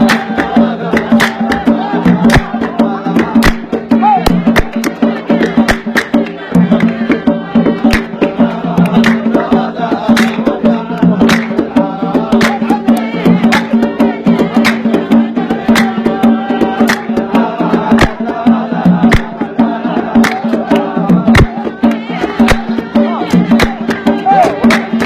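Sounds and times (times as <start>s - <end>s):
sharp percussion strikes: 0.0s - 25.0s
person singing: 6.4s - 25.0s.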